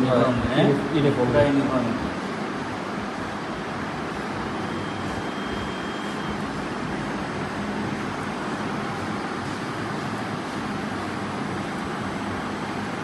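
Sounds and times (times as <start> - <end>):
faint high whine: 3.1 - 13.0.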